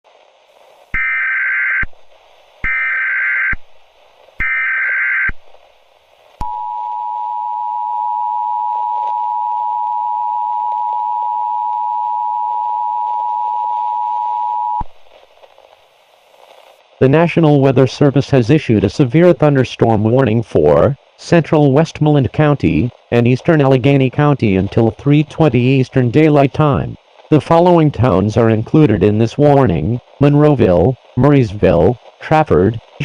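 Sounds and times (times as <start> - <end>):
two-tone attention signal: 6.4 - 14.8.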